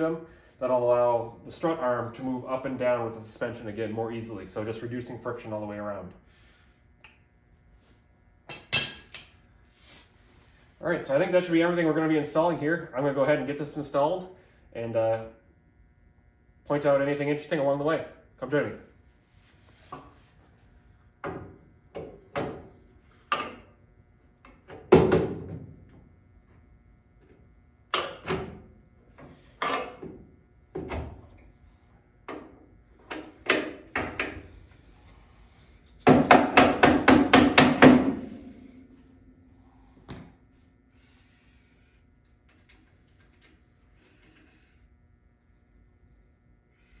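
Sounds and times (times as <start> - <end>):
metallic ring: 8.5 - 9.2
rapid hammer strikes: 36.0 - 38.7.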